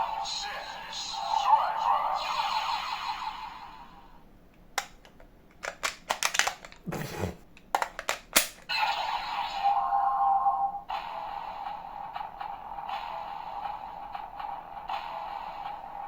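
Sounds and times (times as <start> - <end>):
plastic toy clicks and clacks: 4.8 - 6.8, 7.6 - 8.7
short scrape: 6.9 - 7.4.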